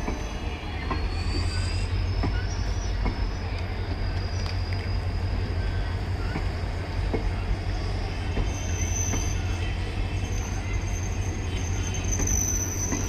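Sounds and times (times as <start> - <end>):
diesel locomotive engine rumbling: 0.0 - 13.0
thin high squeal: 10.2 - 13.0.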